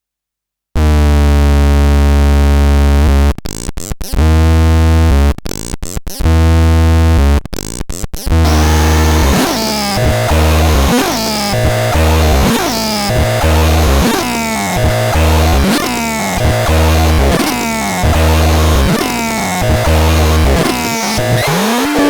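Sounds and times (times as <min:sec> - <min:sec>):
electronic clicks stutter: 0:08.2 - 0:22.0
low electronic buzzing drone: 0:08.4 - 0:22.0.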